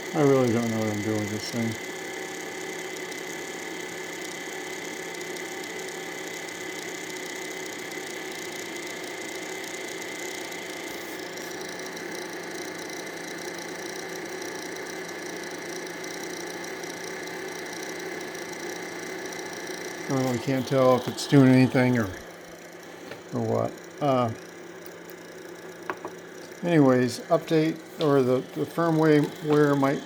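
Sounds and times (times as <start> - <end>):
printer mechanical whir: 0.0 - 30.0
whining tones: 10.5 - 30.0.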